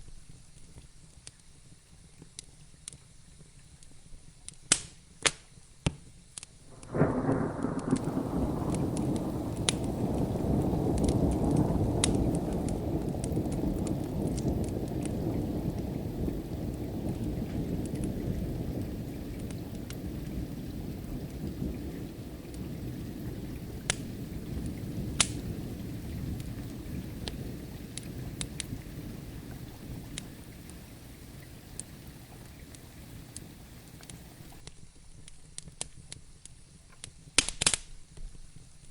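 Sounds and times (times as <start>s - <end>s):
wood fire crackling: 6.4s - 34.7s
steady rain: 6.6s - 34.7s
thunder rumbling: 6.7s - 34.6s.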